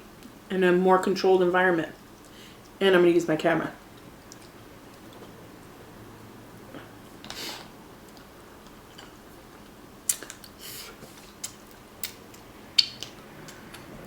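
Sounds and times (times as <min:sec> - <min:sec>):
short hissing: 0:07.3 - 0:07.7.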